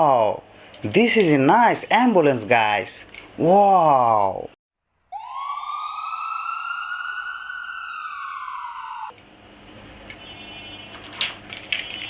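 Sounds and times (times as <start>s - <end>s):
quiet hiss: 0.0s - 4.5s
siren wailing: 5.1s - 9.1s.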